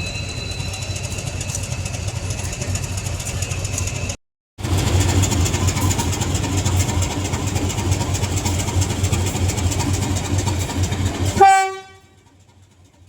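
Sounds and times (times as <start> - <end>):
diesel locomotive engine throbbing: 0.0 - 13.0
locomotive horn note: 11.3 - 12.2.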